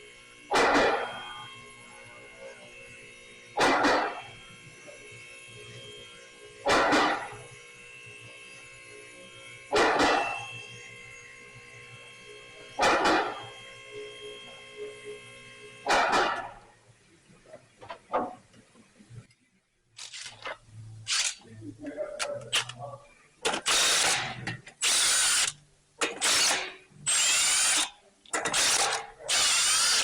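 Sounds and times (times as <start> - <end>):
hydraulic pump motor humming: 23.4 - 30.0.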